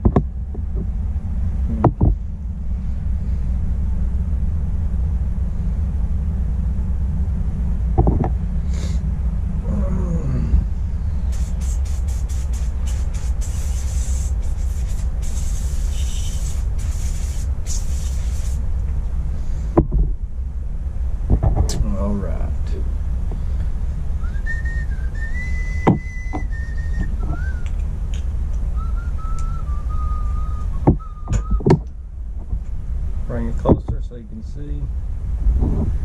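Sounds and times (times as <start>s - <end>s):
steady low hum: 0.0s - 36.0s
air nozzle hissing bursts: 11.2s - 18.7s.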